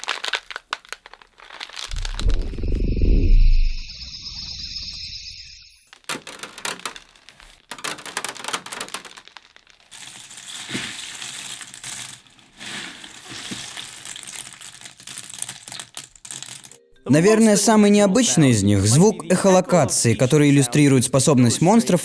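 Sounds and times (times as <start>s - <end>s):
crinkling crackling: 0.0s - 3.8s, 5.8s - 16.8s
high hiss: 1.9s - 5.8s
low rumble: 1.9s - 5.8s.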